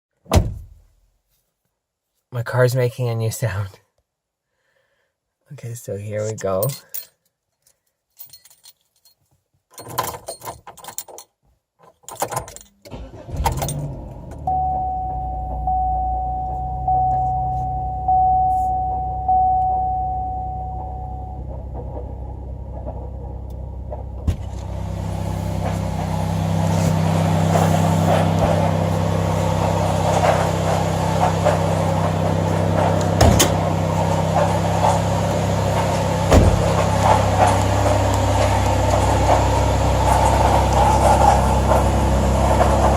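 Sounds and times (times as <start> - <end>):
car keys jangling: 6.5 - 14.4, 25.2 - 41.8
car engine running: 12.9 - 42.9
dashboard warning chime: 14.4 - 21.8.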